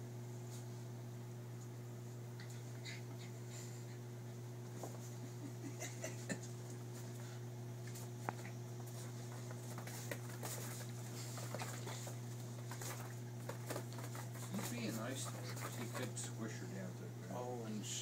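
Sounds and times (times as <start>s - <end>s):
steady low hum: 0.0s - 18.0s
animals scuffling clicks and scrapes: 6.4s - 16.4s.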